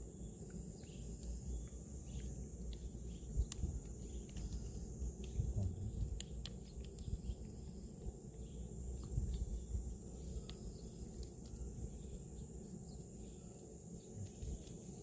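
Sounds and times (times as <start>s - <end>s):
high insect drone: 0.0s - 15.0s.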